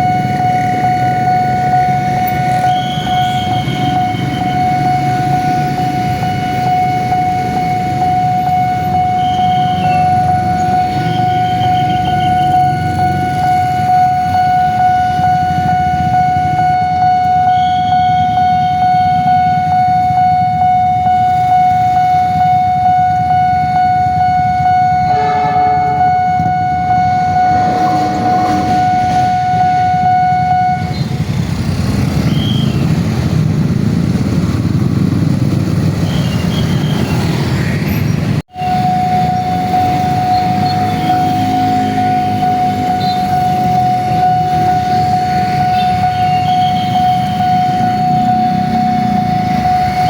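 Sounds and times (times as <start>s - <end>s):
level-crossing alarm tone: 0.0s - 50.0s
train horn blast: 24.5s - 30.9s
train rumbling past: 25.0s - 30.2s.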